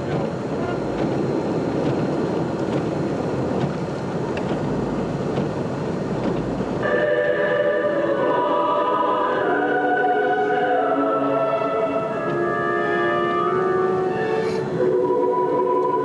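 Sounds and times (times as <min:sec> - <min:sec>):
vehicle cabin rumble: 0:00.0 - 0:06.9, 0:11.5 - 0:16.0
orchestral music on car stereo: 0:04.4 - 0:16.0.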